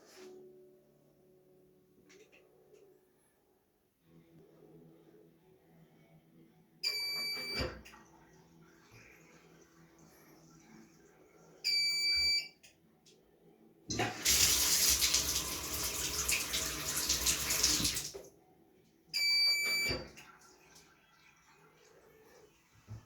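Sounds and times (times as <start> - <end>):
washing machine beeping: 6.8 - 7.9, 11.6 - 12.6, 19.2 - 20.2
rushing water filling drum: 13.9 - 18.1.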